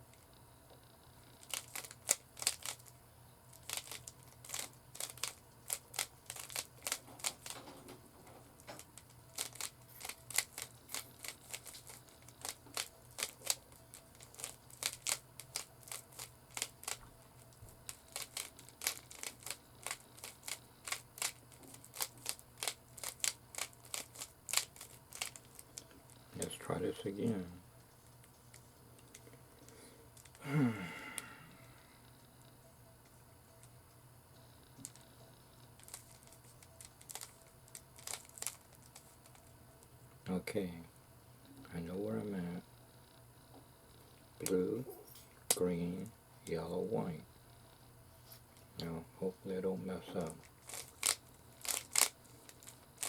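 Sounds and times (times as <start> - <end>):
plastic cube clicks and clacks: 3.6 - 7.6.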